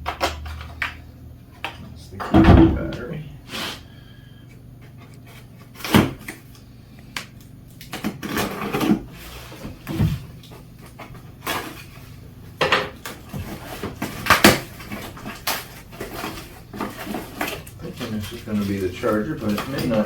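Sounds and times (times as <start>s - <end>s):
boxes knocking and clunking: 1.6s - 3.2s, 8.0s - 11.8s, 12.6s - 20.0s
packaging rustling: 13.0s - 20.0s.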